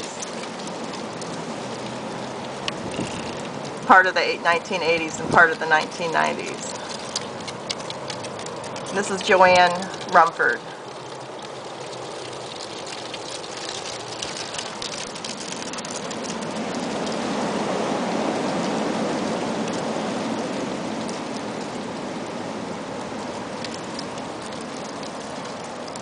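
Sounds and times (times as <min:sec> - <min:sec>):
dry crackling patter: 0:00.0 - 0:17.2, 0:23.1 - 0:26.0
strong gusty wind: 0:02.7 - 0:06.9, 0:16.2 - 0:24.4.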